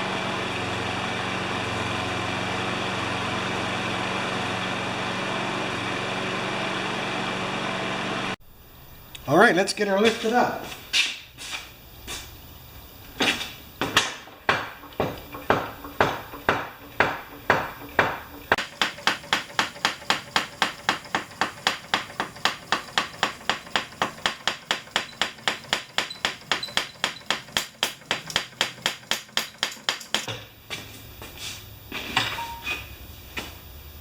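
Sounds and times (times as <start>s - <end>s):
sharp ratcheting clicks: 14.9s - 30.3s.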